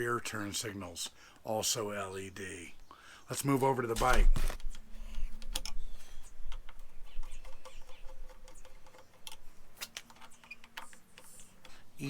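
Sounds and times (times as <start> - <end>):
hand tools clicking and tapping: 4.6 - 12.0.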